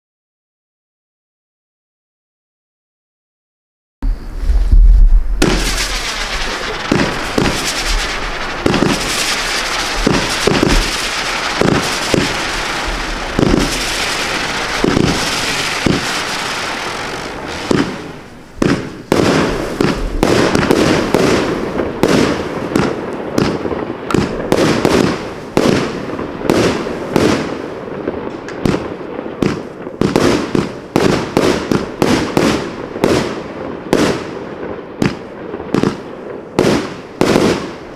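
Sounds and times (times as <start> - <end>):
firework thumps: 4.0 - 27.6
firework rushing hiss: 4.0 - 33.5
firework cracks and bangs: 4.0 - 37.9.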